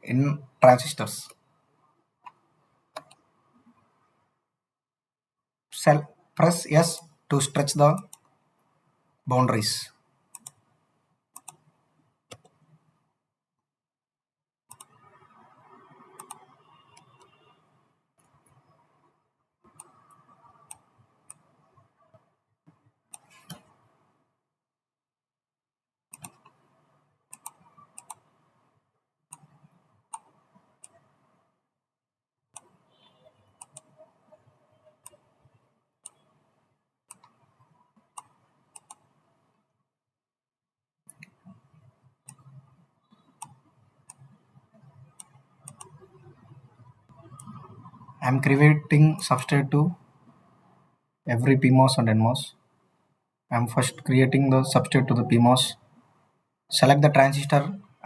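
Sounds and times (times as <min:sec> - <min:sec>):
mouse and keyboard clicks: 0:02.2 - 0:03.3, 0:10.3 - 0:10.6, 0:11.4 - 0:12.8, 0:14.7 - 0:15.4, 0:16.0 - 0:17.3, 0:19.7 - 0:21.5, 0:26.1 - 0:26.7, 0:27.3 - 0:28.3, 0:29.3 - 0:31.1, 0:32.6 - 0:32.8, 0:33.6 - 0:34.0, 0:37.1 - 0:37.4, 0:38.1 - 0:39.2, 0:42.3 - 0:48.1.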